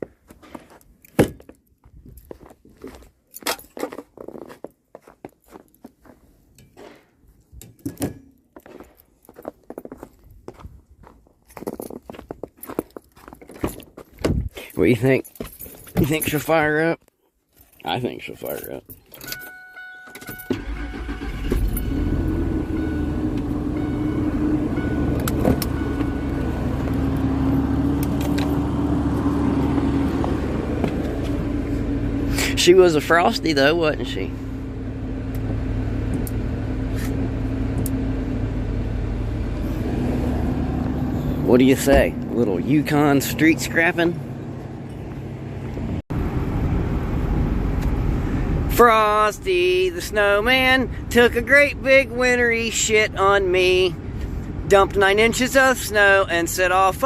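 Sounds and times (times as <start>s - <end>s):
engine starting and idling: 20.2s - 26.2s.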